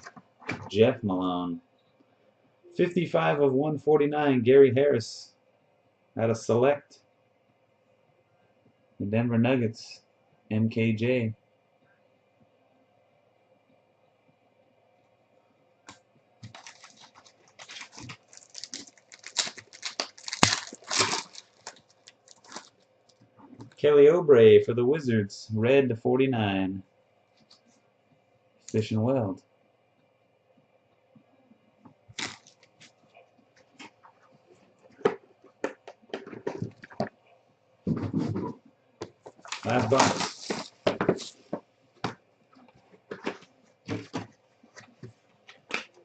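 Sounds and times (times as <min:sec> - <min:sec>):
cards rustling and sliding: 0:16.4 - 0:22.7, 0:39.3 - 0:41.5.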